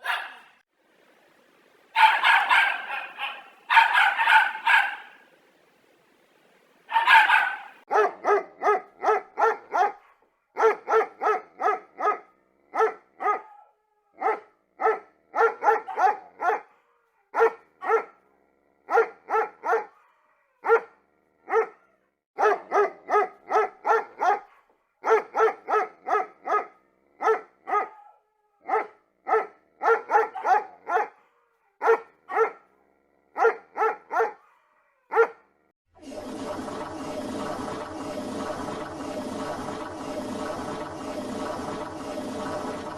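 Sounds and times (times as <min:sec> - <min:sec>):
small dog yapping: 0:00.0 - 0:00.6, 0:02.0 - 0:05.2, 0:06.9 - 0:07.8.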